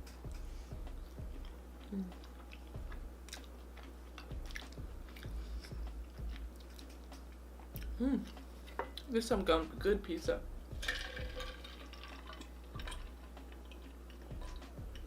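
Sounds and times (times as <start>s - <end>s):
chewing with mouth clicks: 1.0s - 9.1s, 11.8s - 15.0s.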